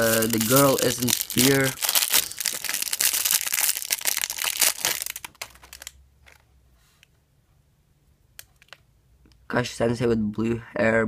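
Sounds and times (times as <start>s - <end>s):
packaging crinkling: 0.0s - 6.4s.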